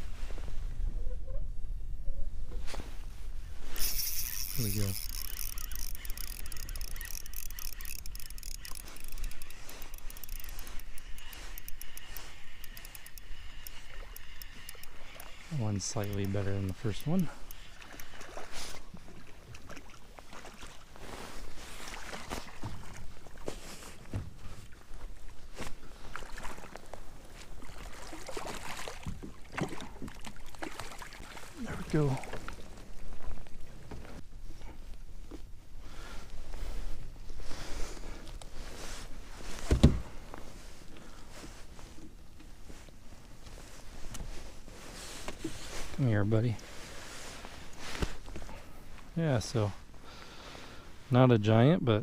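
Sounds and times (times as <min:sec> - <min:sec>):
knocks taps and rustling of gear: 0:03.8 - 0:18.1
fishing reel ticking: 0:03.8 - 0:18.5.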